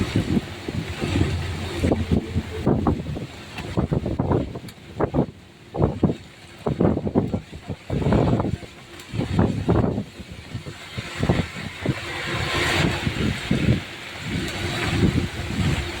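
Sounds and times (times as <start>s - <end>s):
vehicle swishing past: 0.0s - 4.4s
heavy rain falling: 0.0s - 16.0s
traffic on wet road: 0.0s - 16.0s.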